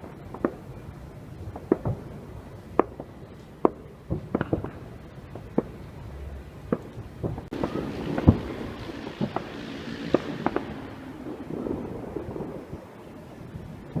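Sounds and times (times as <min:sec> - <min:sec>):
fireworks bangs and cracks: 0:00.0 - 0:14.0
rushing noise: 0:07.4 - 0:14.0.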